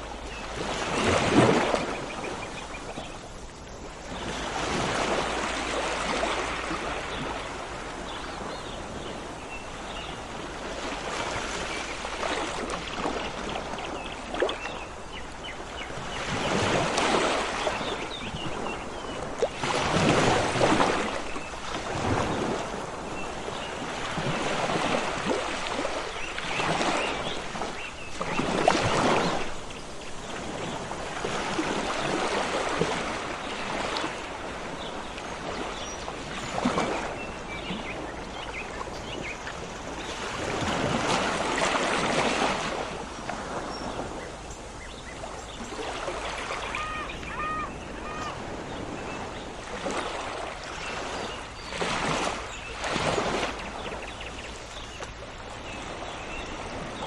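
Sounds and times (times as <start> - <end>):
sea waves washing on shore: 0.0 - 57.0
small birds chirping: 34.8 - 40.6, 43.7 - 50.2.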